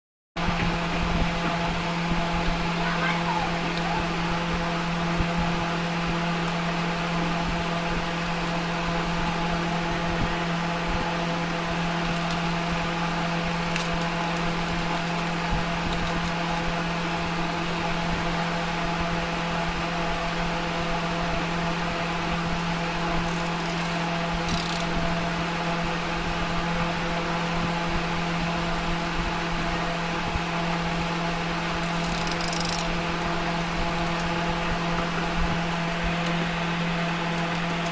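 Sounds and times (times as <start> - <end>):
low machine hum: 0.4 - 37.9.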